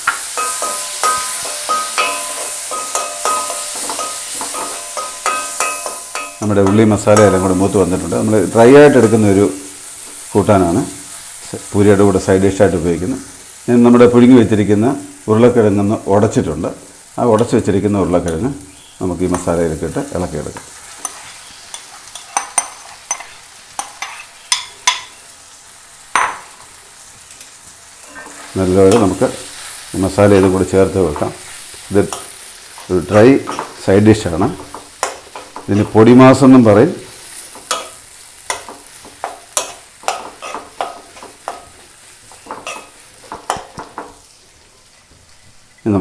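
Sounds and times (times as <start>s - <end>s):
spoon knocking against pan: 0.0s - 7.4s, 26.1s - 26.5s, 37.6s - 41.7s, 42.4s - 44.2s
faint steady sizzle: 0.0s - 46.0s.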